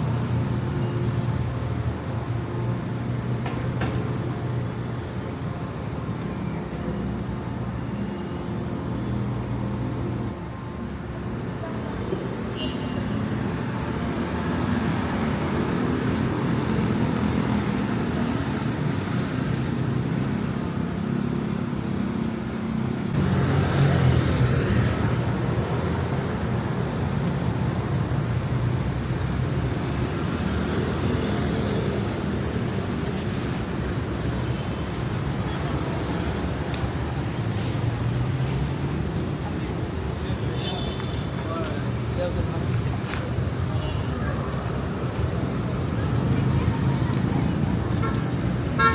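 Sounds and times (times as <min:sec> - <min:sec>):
road traffic engines: 0:00.0 - 0:48.9.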